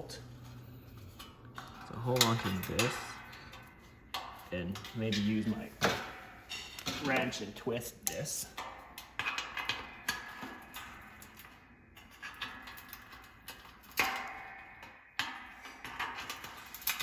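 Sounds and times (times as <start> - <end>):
metal clank: 1.2 - 7.4.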